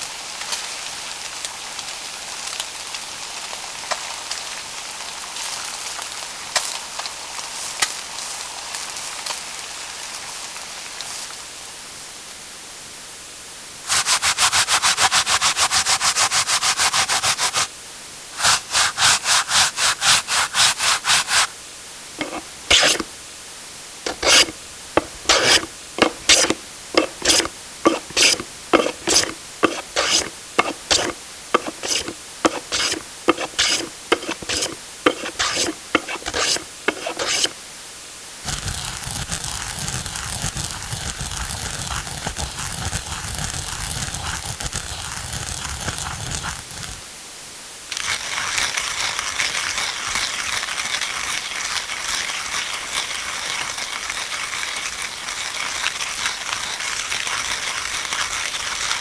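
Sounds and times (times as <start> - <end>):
rubbing scraping strokes: 13.9 - 17.7, 18.4 - 21.5, 22.2 - 23.1, 24.1 - 37.6, 38.5 - 47.0
steady rustling noise: 13.9 - 17.7, 18.4 - 21.5, 22.1 - 23.2, 24.0 - 37.6.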